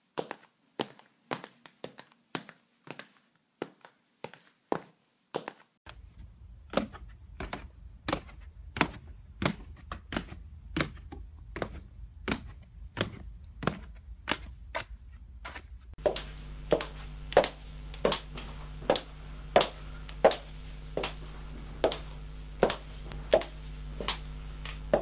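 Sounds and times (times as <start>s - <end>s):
low steady hum: 5.9s - 25.0s
high heels clicking on hard floor: 15.5s - 25.0s.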